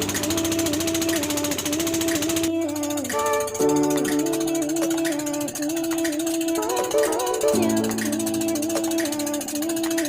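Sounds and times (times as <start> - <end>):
plucked guitar melody over beat: 3.1 - 5.4.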